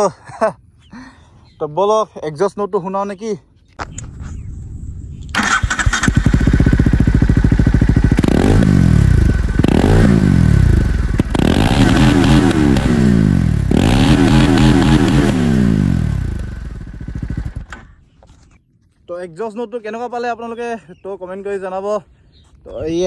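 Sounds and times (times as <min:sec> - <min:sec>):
motorcycle engine idling and revving: 0:03.8 - 0:18.4.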